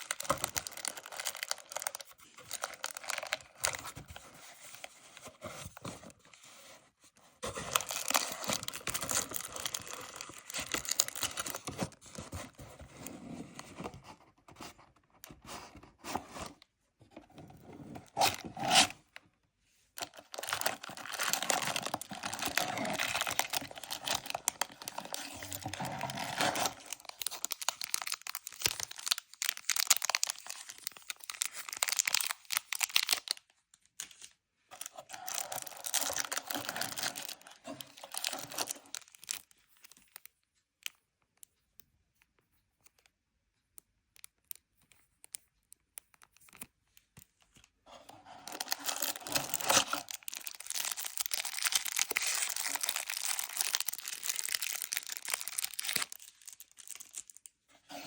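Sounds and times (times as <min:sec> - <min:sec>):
packaging tearing and crinkling: 0:00.0 - 0:04.1, 0:07.5 - 0:12.0, 0:20.0 - 0:33.4, 0:34.1 - 0:39.4, 0:48.4 - 0:57.5.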